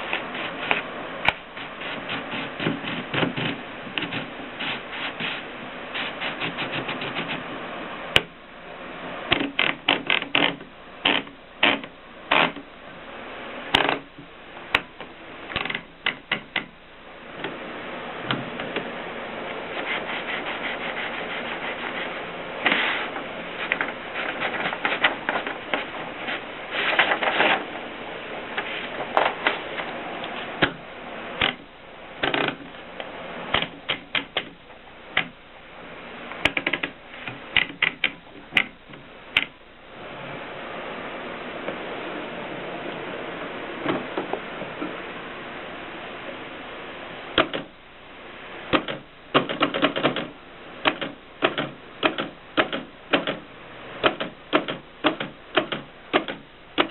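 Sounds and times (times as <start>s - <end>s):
typewriter clicks and clacks: 47.4s - 47.7s, 48.7s - 50.3s, 50.9s - 53.4s, 54.0s - 56.9s.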